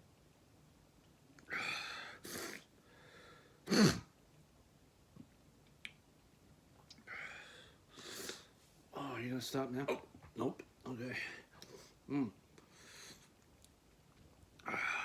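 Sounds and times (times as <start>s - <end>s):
man hiccuping: 3.7s - 4.1s.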